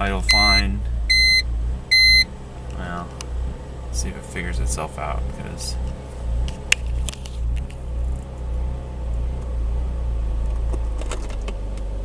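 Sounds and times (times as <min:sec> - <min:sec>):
car engine idling rough: 0:00.0 - 0:12.0.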